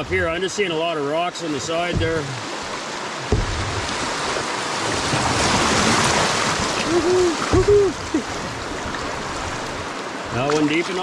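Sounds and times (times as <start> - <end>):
river water rushing over rocks: 0.0 - 11.0.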